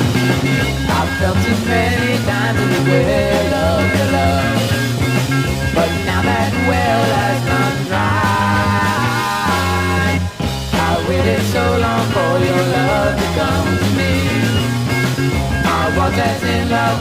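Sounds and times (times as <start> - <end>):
psychedelic rock band instrumental: 0.0 - 17.0.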